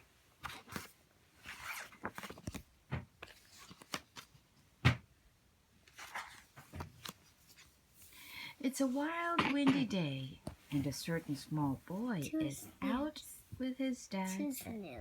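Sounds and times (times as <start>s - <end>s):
paper pages turning: 0.4s - 4.6s, 5.8s - 7.8s.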